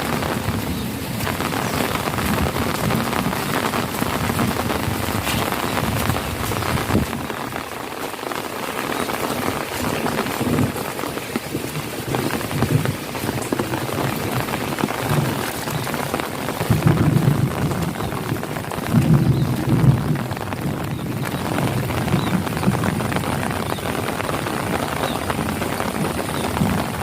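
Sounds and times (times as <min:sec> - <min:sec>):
heavy rain pouring: 0:00.0 - 0:27.0.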